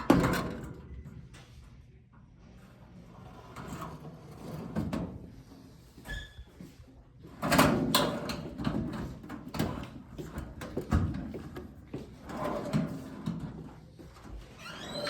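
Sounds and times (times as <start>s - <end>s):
drawer scraping along rails: 3.1s - 5.4s, 12.2s - 13.6s.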